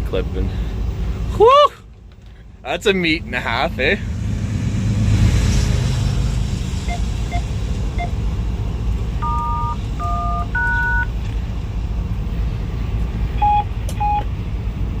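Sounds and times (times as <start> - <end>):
locomotive cab rumble: 6.1 - 15.0
short beeps: 9.2 - 11.1, 13.4 - 14.3
two-tone keypad tones: 9.2 - 11.1, 13.4 - 14.2.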